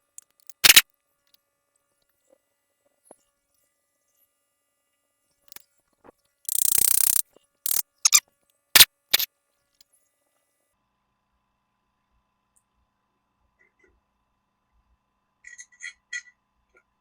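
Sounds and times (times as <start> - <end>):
faint tool clicks: 0.2 - 0.8, 6.5 - 8.2, 8.8 - 9.3
ratcheting buzz: 0.3 - 0.8, 6.5 - 8.2, 8.8 - 9.3
short sharp tool bursts: 0.5 - 0.8, 6.5 - 8.2, 8.8 - 9.3.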